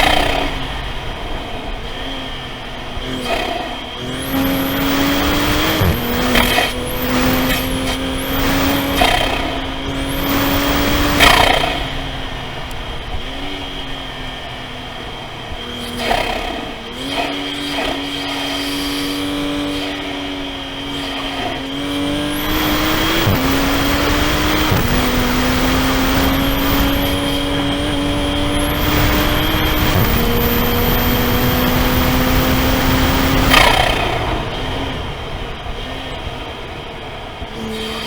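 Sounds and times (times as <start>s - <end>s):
car engine revving: 0.0s - 38.0s
road noise rush: 0.0s - 38.0s.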